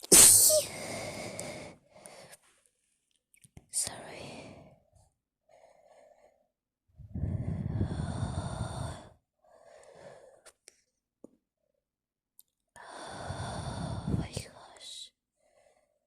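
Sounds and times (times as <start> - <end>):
woman breathing heavily: 0.3 - 2.5, 5.5 - 10.5, 12.8 - 14.3.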